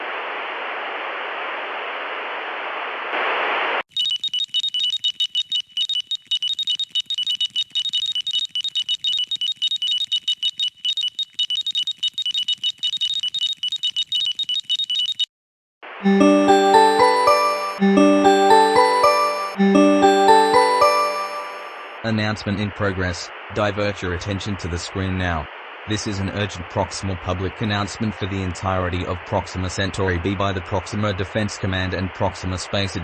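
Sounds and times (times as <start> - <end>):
emergency alert tones: 16.0 - 22.0.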